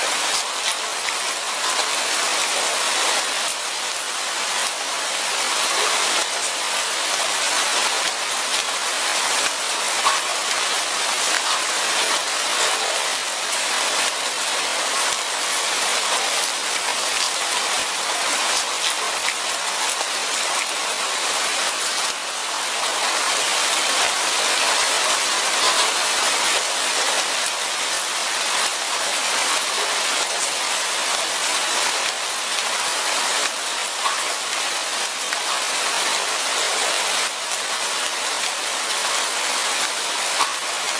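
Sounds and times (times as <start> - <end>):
rain falling: 0.0 - 40.9.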